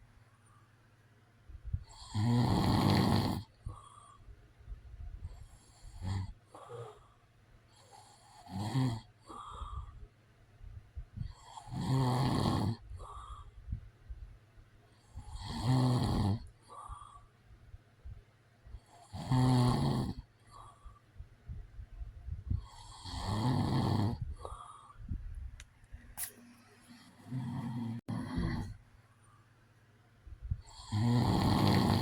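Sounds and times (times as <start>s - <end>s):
man snoring: 1.9s - 4.0s, 5.6s - 7.0s, 7.8s - 9.9s, 11.3s - 13.4s, 15.2s - 17.1s, 18.8s - 20.3s, 22.6s - 24.6s, 27.2s - 28.8s, 30.6s - 32.0s.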